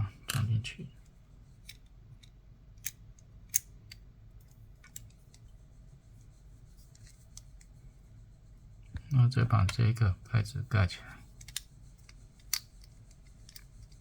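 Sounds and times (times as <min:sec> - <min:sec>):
lock parts clicking: 0:01.6 - 0:05.2, 0:11.4 - 0:14.0.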